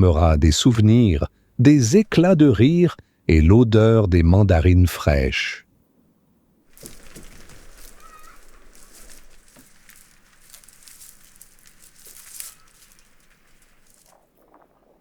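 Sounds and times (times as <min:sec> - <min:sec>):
sticks rustling and crackling: 0:06.7 - 0:14.2.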